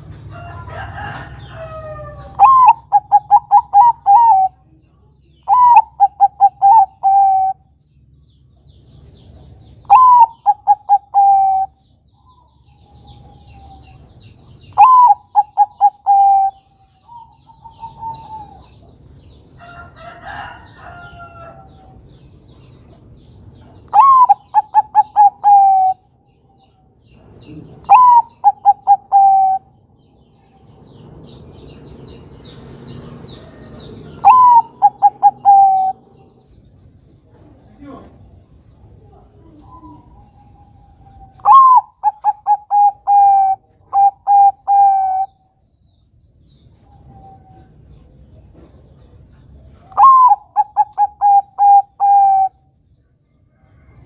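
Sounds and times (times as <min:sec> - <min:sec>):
dove cooing: 0:01.8 - 0:04.7, 0:05.5 - 0:07.7, 0:09.8 - 0:11.8, 0:14.7 - 0:18.9, 0:23.9 - 0:26.1, 0:27.4 - 0:29.8, 0:33.5 - 0:36.5, 0:39.0 - 0:45.4, 0:49.8 - 0:52.7
faint small bird chirps: 0:39.1 - 0:43.1.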